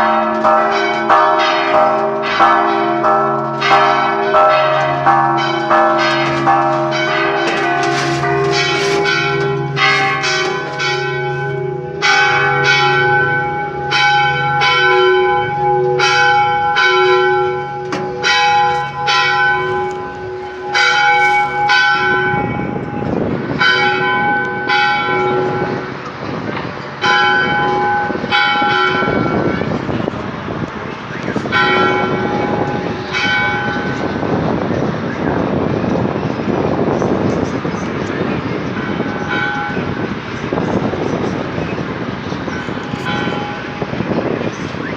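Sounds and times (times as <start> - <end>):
church bells pealing: 0.0 - 44.9.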